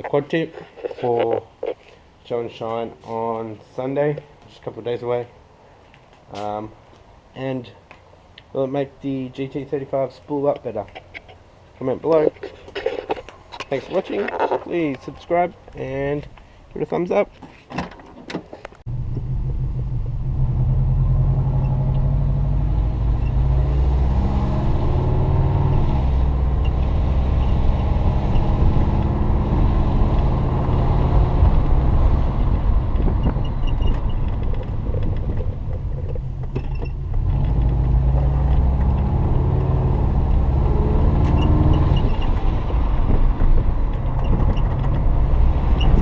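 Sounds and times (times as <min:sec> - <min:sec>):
car engine running: 0:18.9 - 0:33.3.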